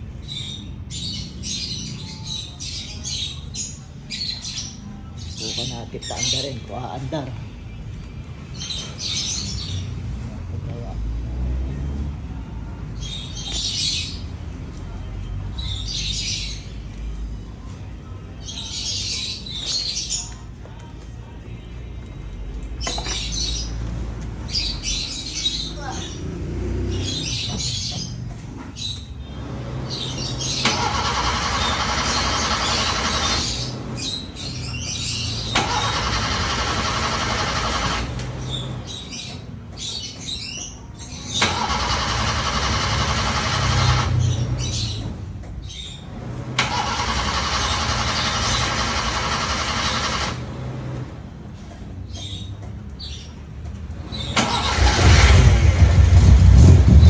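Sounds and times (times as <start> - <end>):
car engine starter cranking: 30.4 - 33.7, 35.4 - 38.4, 41.3 - 44.3, 46.5 - 50.5, 54.2 - 57.0.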